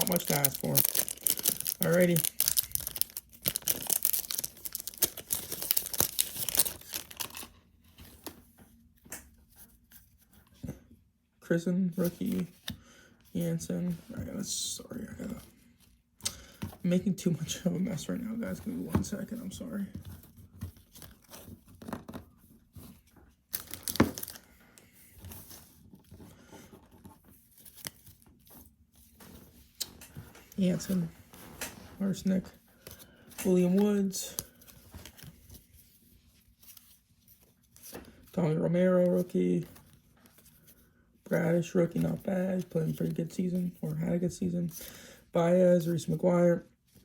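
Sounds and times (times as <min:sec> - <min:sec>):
wrapper tearing and crinkling: 0:00.0 - 0:07.6, 0:23.5 - 0:24.5.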